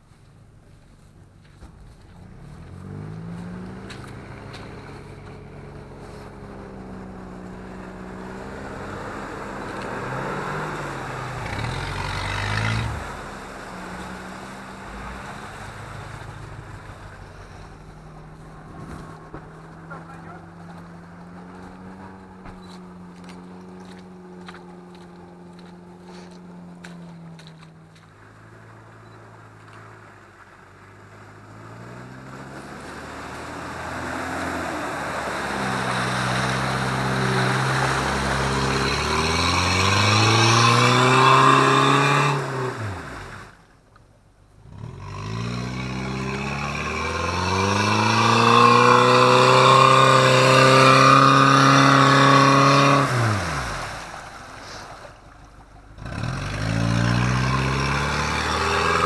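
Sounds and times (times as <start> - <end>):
engine revving hard: 7.4 - 22.8, 31.7 - 43.6, 44.6 - 54.3, 55.9 - 59.0.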